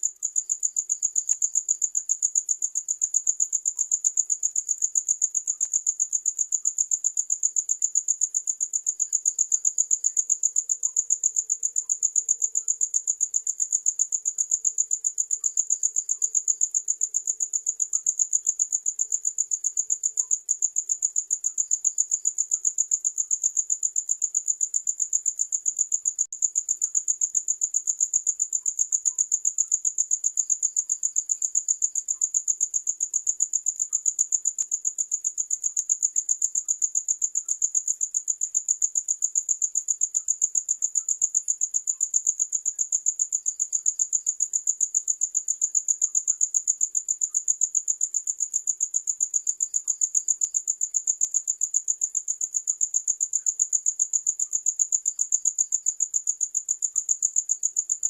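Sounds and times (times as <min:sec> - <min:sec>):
cricket chirping: 0:00.0 - 0:58.0.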